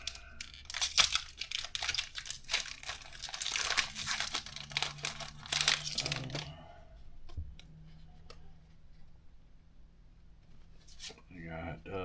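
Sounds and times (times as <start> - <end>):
foil wrapper crinkling and ripping: 0.0 - 6.6.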